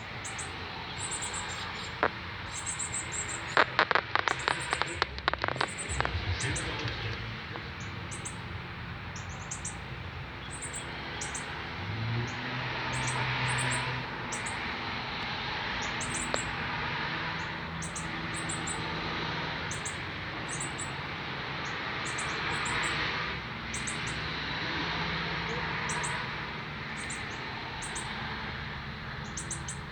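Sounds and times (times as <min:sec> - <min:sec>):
bird chip calls: 0:00.1 - 0:11.7, 0:12.3 - 0:14.8, 0:15.7 - 0:16.8, 0:17.4 - 0:19.0, 0:19.7 - 0:23.1, 0:23.7 - 0:24.8, 0:25.4 - 0:26.3, 0:26.9 - 0:28.3, 0:29.2 - 0:29.9
sharp clicks: 0:01.5 - 0:08.3, 0:16.0 - 0:16.6
steady hiss: 0:01.6 - 0:08.1.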